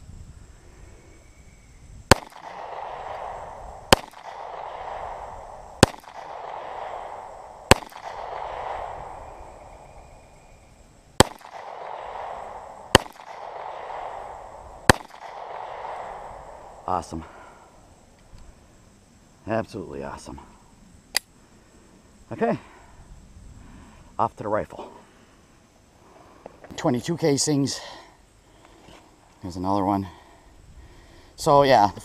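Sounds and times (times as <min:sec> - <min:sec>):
pistol shots with echo: 0:02.1 - 0:09.2, 0:11.2 - 0:16.7.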